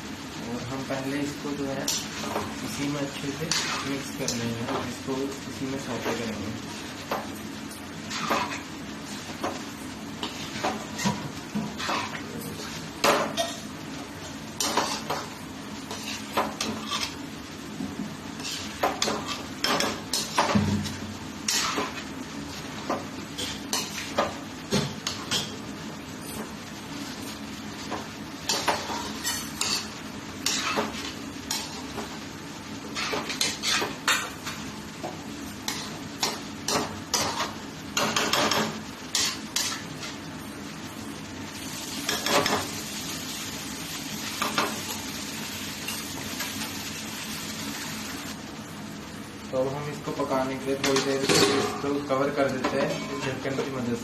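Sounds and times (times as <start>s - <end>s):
food sizzling: 0.0s - 48.5s
spoon scraping a pan: 8.1s - 8.6s, 11.8s - 13.7s, 15.9s - 17.2s, 18.4s - 20.5s, 21.5s - 22.0s, 28.5s - 31.8s, 32.9s - 34.6s, 35.6s - 39.9s.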